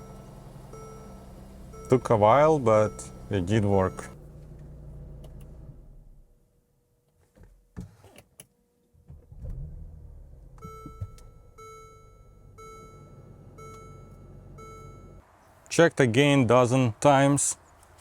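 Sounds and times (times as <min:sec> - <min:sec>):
dashboard warning chime: 0:00.0 - 0:04.2, 0:10.6 - 0:15.2
ignition clicks: 0:00.0 - 0:06.2, 0:10.4 - 0:15.2
car engine stopping and idling: 0:00.0 - 0:06.4.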